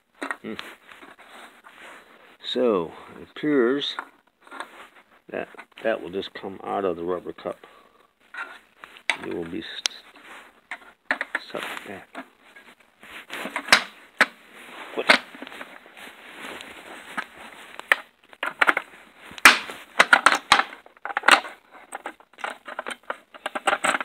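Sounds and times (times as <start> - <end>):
plastic scraping: 3.8 - 6.0, 8.2 - 24.0.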